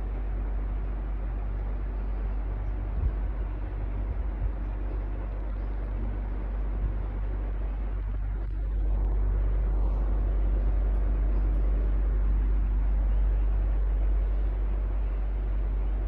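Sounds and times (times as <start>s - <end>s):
electric fan running: 0.0s - 16.0s.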